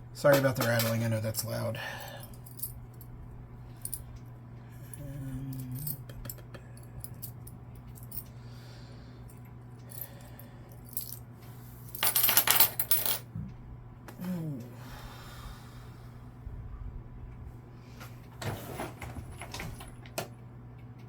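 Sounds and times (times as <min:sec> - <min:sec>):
metal tools clinking and rattling: 0:00.3 - 0:01.1, 0:12.0 - 0:13.2.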